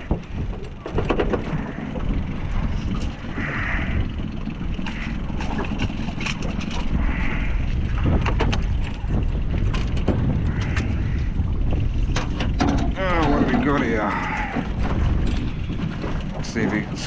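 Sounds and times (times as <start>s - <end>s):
handling knocks and clicks: 0.0s - 1.6s
wind buffeting microphone: 0.0s - 17.0s.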